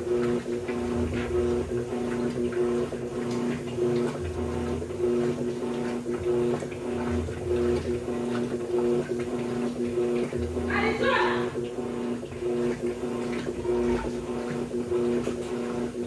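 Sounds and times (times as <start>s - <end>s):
washing machine motor hum: 0.0s - 16.0s
water sloshing in tub: 0.0s - 16.0s
agitator low surge: 10.4s - 15.0s.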